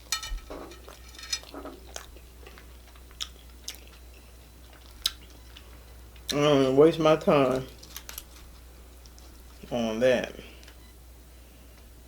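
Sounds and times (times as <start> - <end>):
chewing crunchy tacos: 0.0 - 6.4, 7.3 - 9.7.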